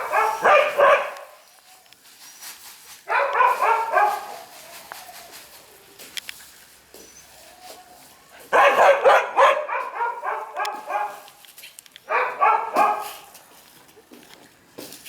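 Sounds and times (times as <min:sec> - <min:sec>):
puppy yipping: 0:00.0 - 0:01.2, 0:03.1 - 0:05.4, 0:07.1 - 0:11.2.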